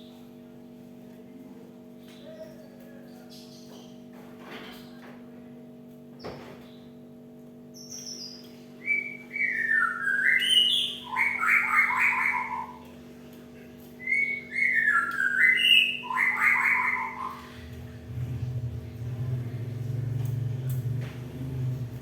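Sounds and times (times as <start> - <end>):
faint low hum: 0.0 - 22.0
bird whistling and chattering: 7.9 - 12.9, 14.0 - 17.6.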